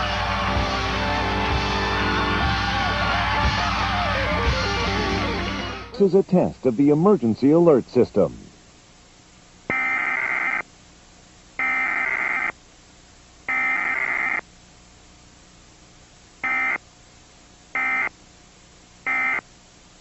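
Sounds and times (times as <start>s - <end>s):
electronic warbling data bursts: 9.7s - 10.7s, 11.6s - 12.6s, 13.5s - 14.4s, 16.4s - 16.8s, 17.8s - 18.1s, 19.0s - 19.4s.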